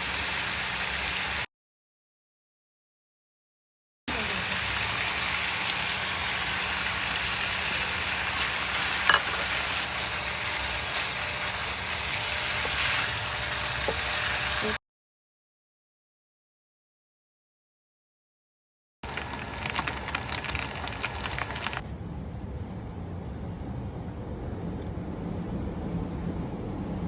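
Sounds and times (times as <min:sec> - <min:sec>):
food sizzling in frying pan: 0:00.0 - 0:01.5, 0:04.1 - 0:14.8, 0:19.0 - 0:21.8.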